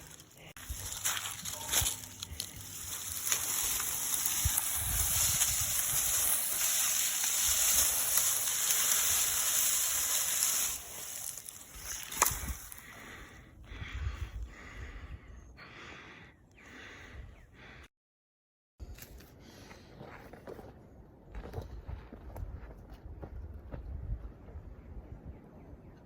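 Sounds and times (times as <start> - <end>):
water spraying hiss: 2.6 - 12.4.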